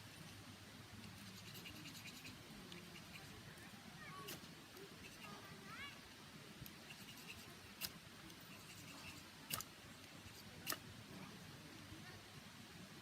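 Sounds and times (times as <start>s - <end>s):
small stream murmuring: 0.0s - 13.0s.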